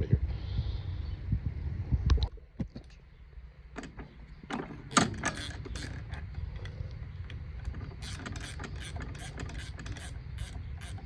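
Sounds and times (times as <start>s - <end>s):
low steady rumble: 0.0s - 11.0s
metal tools clicking and clanking: 3.8s - 11.0s.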